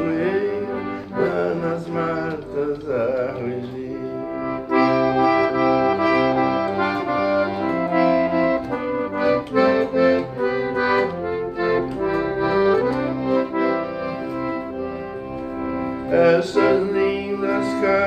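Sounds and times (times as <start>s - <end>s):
instrumental melody over chords: 0.0s - 18.0s.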